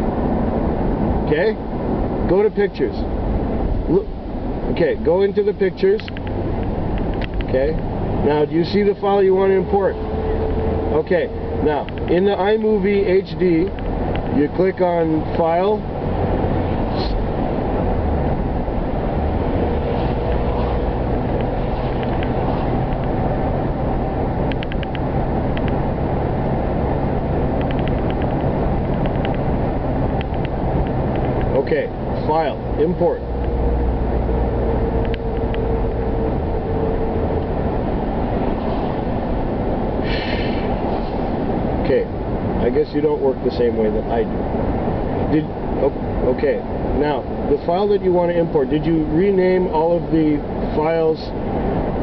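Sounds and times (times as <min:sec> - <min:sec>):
car cabin engine and road noise: 0:00.0 - 0:52.0
faint clicks: 0:35.0 - 0:35.6.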